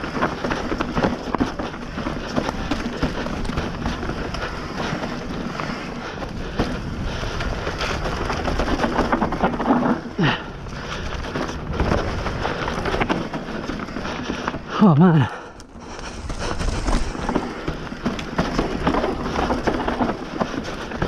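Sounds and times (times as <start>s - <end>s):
bike rattling and knocking: 0.0s - 21.0s
tyres crunching over dirt: 0.0s - 21.0s
wind noise on microphone: 2.7s - 13.3s, 15.6s - 17.7s.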